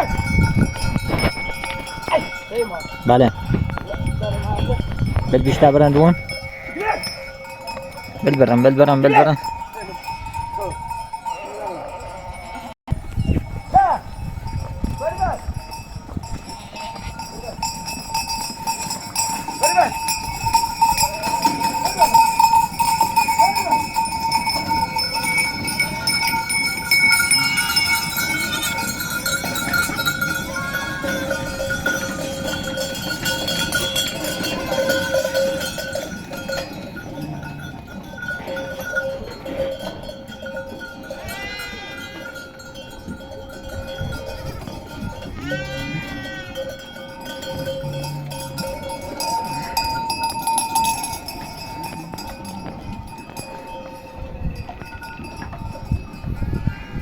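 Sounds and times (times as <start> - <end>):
sheep bells ringing: 0.0 - 57.0
sheep bleating: 41.2 - 42.3, 45.4 - 46.6.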